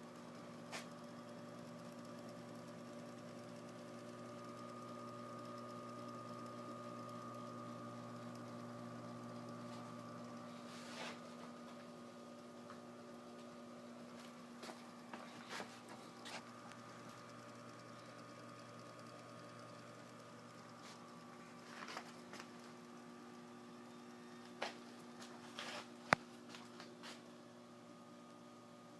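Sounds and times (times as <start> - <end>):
electric typewriter motor hum: 0.0 - 28.5.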